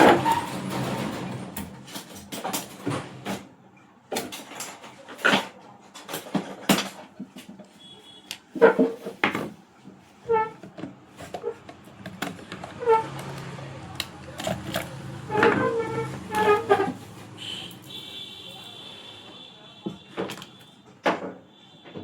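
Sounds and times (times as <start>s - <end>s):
clicks and knocks of tools: 10.6s - 16.8s.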